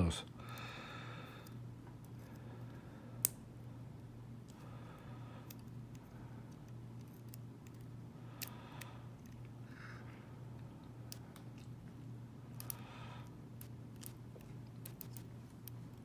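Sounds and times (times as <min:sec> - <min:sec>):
steady low hum: 0:00.0 - 0:16.0
lock picks clicking: 0:05.5 - 0:08.6, 0:12.5 - 0:12.8, 0:13.6 - 0:16.0.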